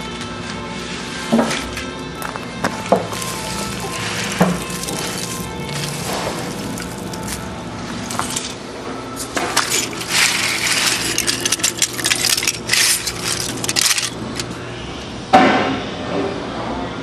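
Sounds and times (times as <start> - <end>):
industrial grinder humming: 2.0 - 14.8
material clattering in grinder: 2.6 - 7.4, 9.3 - 14.5.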